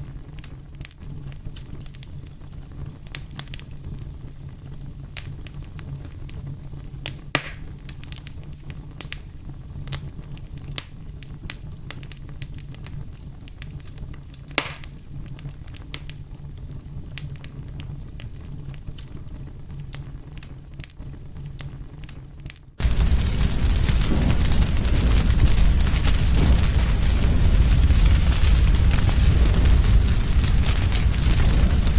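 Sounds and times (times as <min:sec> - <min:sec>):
campfire crackling: 0:00.0 - 0:31.9
loud fire pops: 0:00.0 - 0:31.9
low steady rumble: 0:22.8 - 0:31.9.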